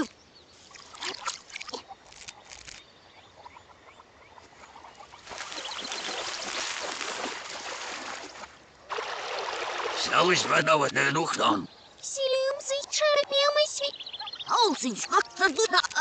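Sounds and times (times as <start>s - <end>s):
reversed running water: 4.6s - 11.5s.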